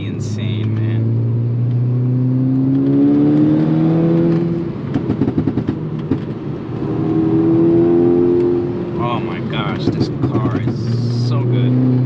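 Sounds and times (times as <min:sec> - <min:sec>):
car engine accelerating: 0:00.0 - 0:12.0
exhaust pops and crackles: 0:04.2 - 0:06.5, 0:09.2 - 0:11.4.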